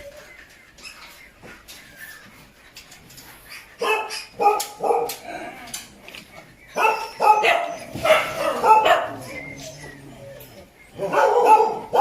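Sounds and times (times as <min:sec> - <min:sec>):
dog barking: 0:03.8 - 0:05.2, 0:06.8 - 0:09.3, 0:11.0 - 0:12.0.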